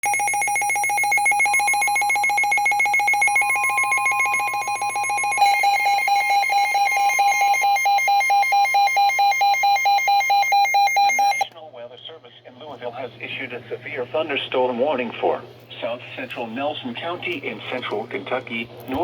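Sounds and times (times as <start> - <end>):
pulsing electronic alert tone: 0.0 - 11.4.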